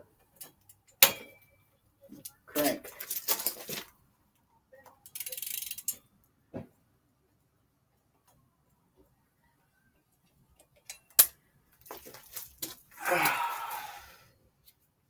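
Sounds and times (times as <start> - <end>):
short wordless grunt: 13.0 - 14.2.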